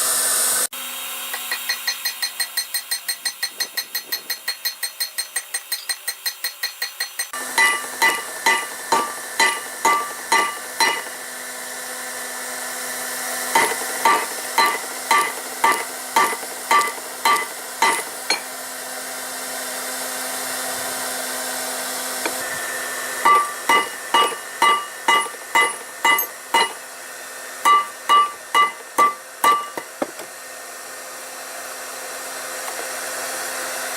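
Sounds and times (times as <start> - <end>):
hammer striking steel on anvil: 1.3 - 11.2, 13.5 - 18.6, 22.2 - 26.9, 27.6 - 30.3
steady hum: 7.4 - 11.3, 13.5 - 18.6, 22.2 - 30.3.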